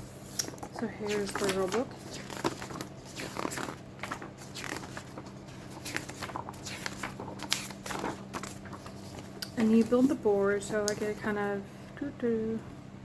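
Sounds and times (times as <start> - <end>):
paper and cardboard rustling: 0.0 - 10.2.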